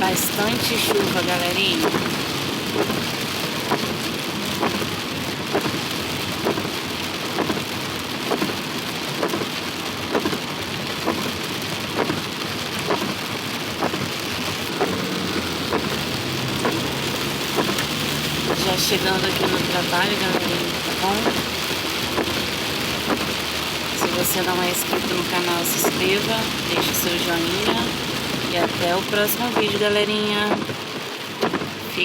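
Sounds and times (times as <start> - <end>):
heavy rain falling: 0.0 - 32.0.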